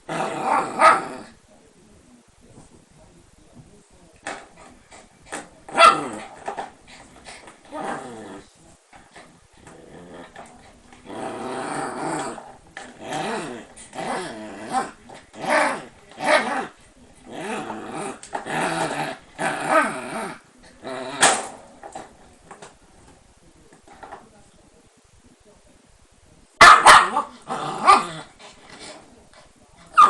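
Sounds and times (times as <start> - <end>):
dog growling and grumbling: 0.0 - 1.4, 4.3 - 22.6, 27.1 - 30.0.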